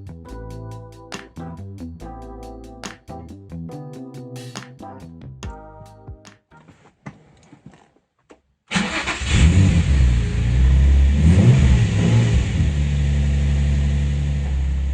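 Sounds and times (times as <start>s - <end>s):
car engine starting and idling: 8.7s - 14.9s.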